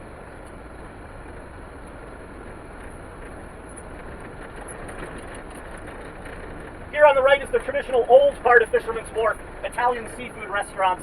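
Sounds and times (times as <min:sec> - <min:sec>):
road and engine noise in cabin: 0:00.0 - 0:11.0.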